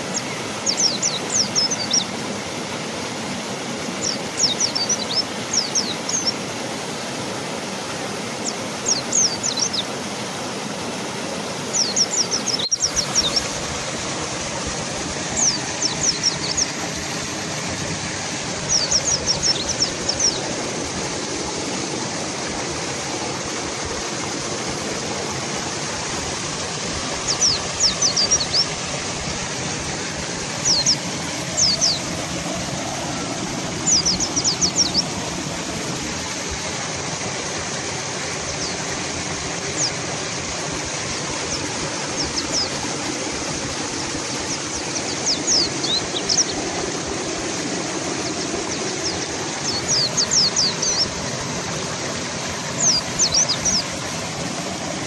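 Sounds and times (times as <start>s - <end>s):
fast-flowing river rushing: 0.0s - 55.0s
bird chirping: 0.1s - 2.1s, 4.0s - 6.4s, 8.4s - 9.9s, 11.7s - 13.6s, 15.2s - 17.2s, 18.6s - 20.5s, 27.1s - 28.8s, 30.4s - 32.9s, 33.5s - 35.2s, 44.5s - 46.7s, 48.3s - 51.2s, 52.8s - 53.9s.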